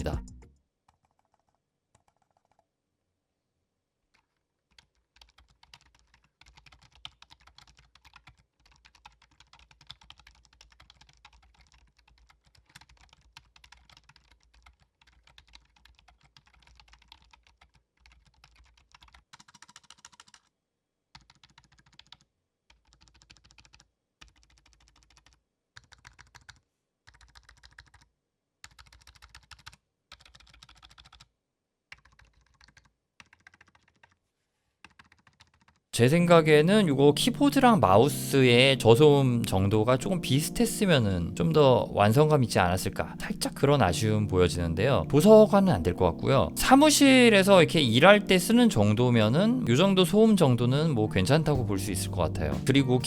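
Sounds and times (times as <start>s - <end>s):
typing on membrane keyboard: 0.8s - 2.7s, 4.1s - 20.5s, 21.1s - 31.3s, 31.9s - 34.2s, 34.8s - 38.2s.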